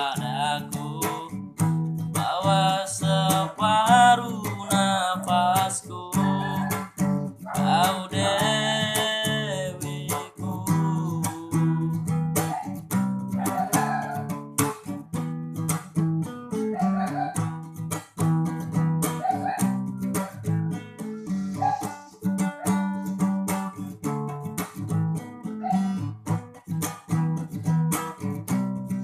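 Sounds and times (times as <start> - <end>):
person singing: 0.0 - 12.2
acoustic guitar strumming: 0.0 - 29.0.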